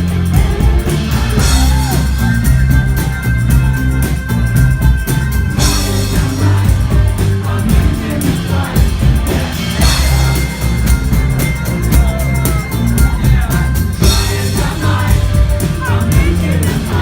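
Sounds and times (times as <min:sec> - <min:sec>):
person singing: 0:00.0 - 0:03.0, 0:05.6 - 0:17.0
live band playing: 0:00.0 - 0:17.0.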